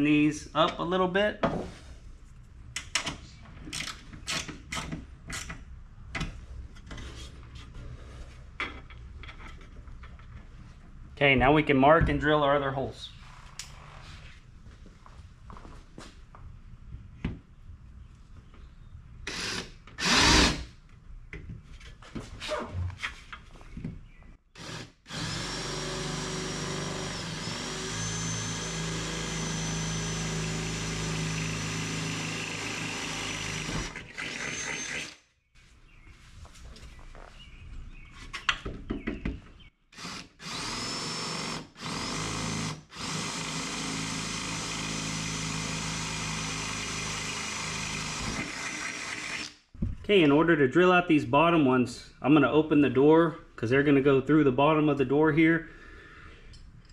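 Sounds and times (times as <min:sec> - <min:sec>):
power drill boring into steel: 0:19.3 - 0:20.6, 0:24.6 - 0:35.2.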